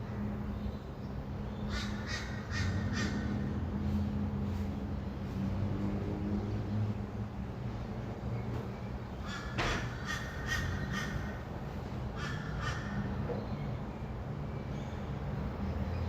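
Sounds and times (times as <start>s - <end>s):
distant traffic hum: 0.0s - 16.0s
bird giving harsh rasping calls: 1.7s - 3.4s, 9.2s - 11.4s, 12.2s - 13.1s.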